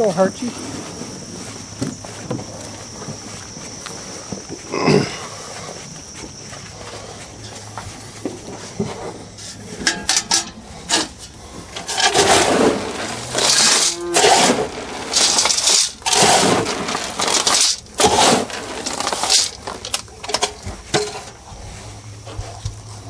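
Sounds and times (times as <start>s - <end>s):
bucket clinks and scrapes: 0.0s - 21.5s
feed pouring into buckets: 11.8s - 20.6s.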